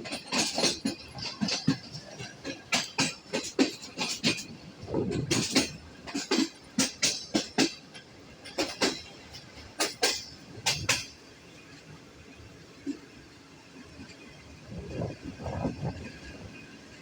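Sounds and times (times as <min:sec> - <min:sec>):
wheels clicking over rail joints: 0:00.0 - 0:12.0.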